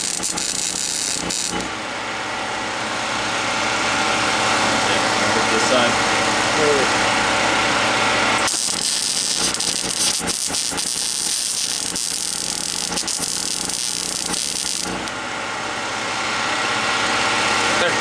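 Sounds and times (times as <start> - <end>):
welding arc crackling and hissing: 0.0 - 1.8, 8.3 - 15.2
low machine hum: 0.0 - 18.0.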